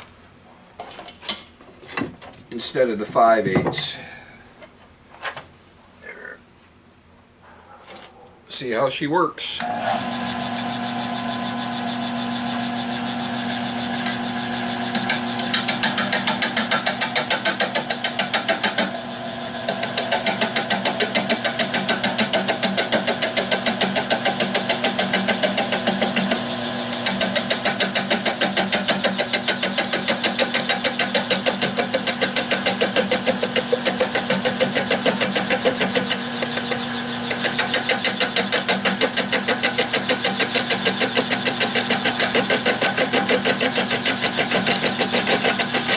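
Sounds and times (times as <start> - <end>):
wood lathe motor hum: 9.6 - 45.9.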